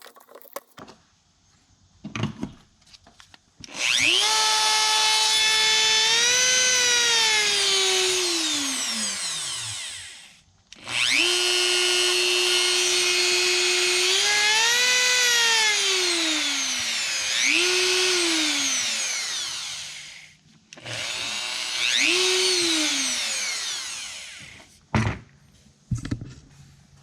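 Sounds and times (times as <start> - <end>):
rotary tool motor whining: 3.7 - 24.7.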